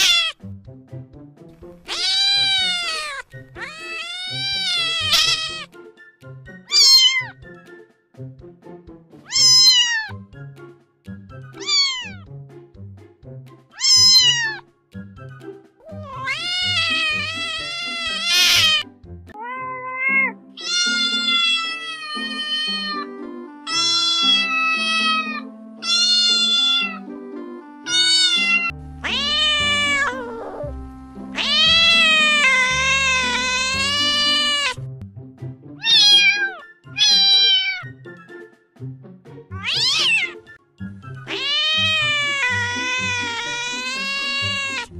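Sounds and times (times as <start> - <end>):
cat meowing: 0.0 - 0.4, 1.9 - 5.7, 6.7 - 7.4, 9.3 - 10.2, 11.6 - 12.2, 13.8 - 14.6, 15.8 - 18.8, 19.4 - 23.1, 23.7 - 27.0, 27.9 - 30.7, 31.4 - 34.8, 35.8 - 37.9, 39.6 - 40.4, 41.3 - 44.9
background music: 0.0 - 44.9.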